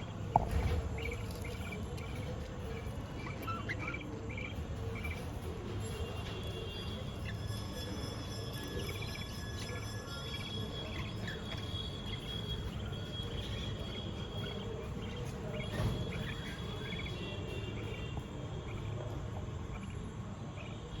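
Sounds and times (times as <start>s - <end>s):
budgerigars chirping: 0.0s - 21.0s.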